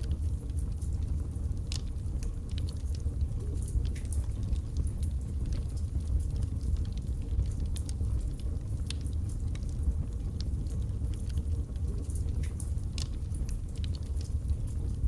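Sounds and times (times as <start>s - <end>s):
fire flames rumbling: 0.0s - 15.0s
logs crackling and popping: 0.0s - 15.0s.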